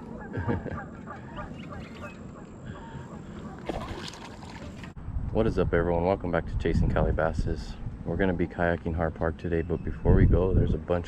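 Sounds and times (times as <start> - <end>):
geese honking: 0.0 - 4.1.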